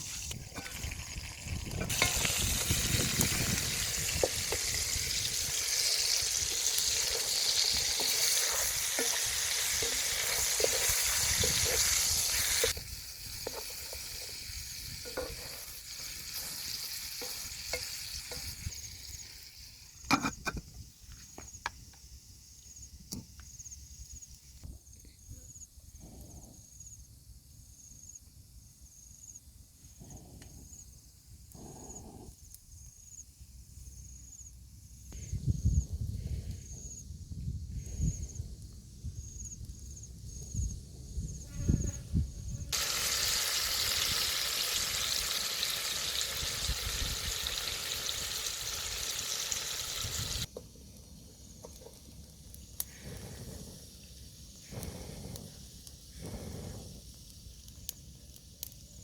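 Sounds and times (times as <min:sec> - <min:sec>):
food sizzling in a pan: 0:00.0 - 0:20.3, 0:42.7 - 0:50.5.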